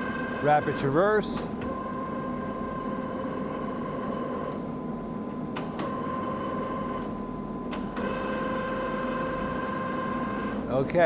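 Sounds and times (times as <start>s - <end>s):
lathe machine whine: 0.0s - 4.5s.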